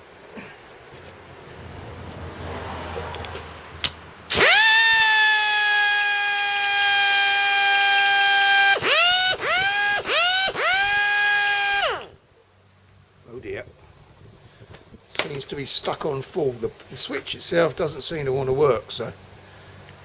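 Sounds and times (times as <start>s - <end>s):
air tool motor whining: 4.3s - 12.2s
sharp click: 15.1s - 15.6s.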